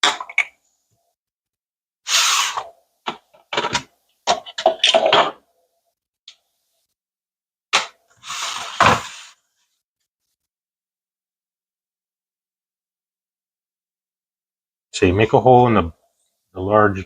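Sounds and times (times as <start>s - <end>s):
plastic parts knocking and clattering: 3.0s - 5.4s.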